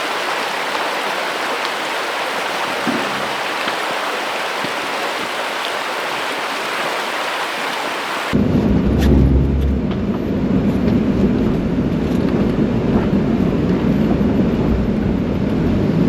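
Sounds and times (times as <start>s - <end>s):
river water rushing over stones: 0.0s - 8.4s.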